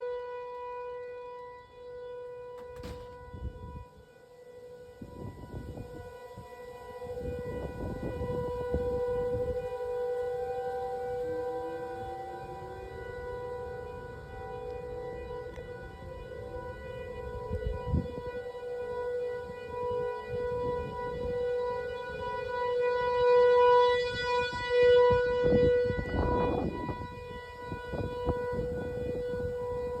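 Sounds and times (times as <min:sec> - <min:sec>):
lower siren tone rising: 0:00.0 - 0:30.0
warning siren wailing: 0:00.0 - 0:30.0.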